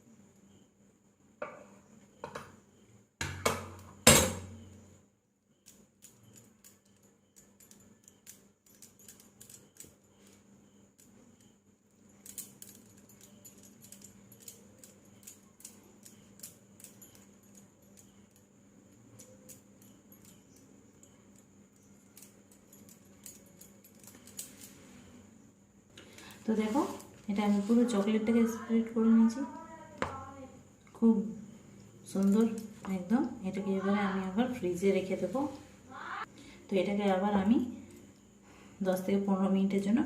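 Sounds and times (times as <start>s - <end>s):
faint steady hum: 0.0s - 40.0s.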